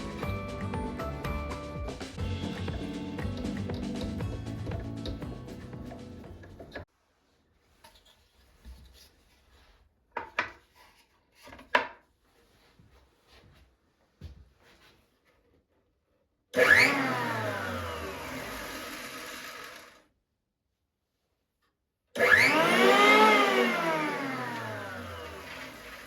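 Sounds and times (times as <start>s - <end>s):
electric motor whining and winding down: 16.6s - 20.0s, 22.2s - 26.0s.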